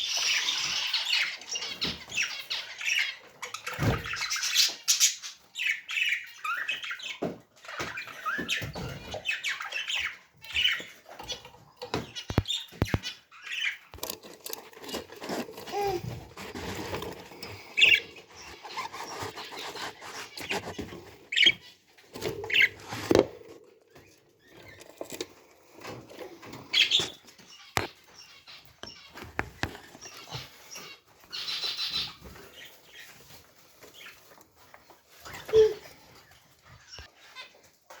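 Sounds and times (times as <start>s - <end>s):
birds chirping and squeaking: 0.0s - 38.0s
scratching and rustling: 10.6s - 38.0s.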